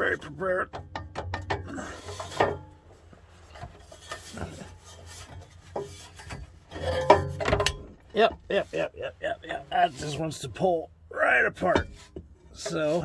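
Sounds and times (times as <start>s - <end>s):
driveshaft scraping and rubbing: 0.0s - 10.7s, 11.5s - 13.0s.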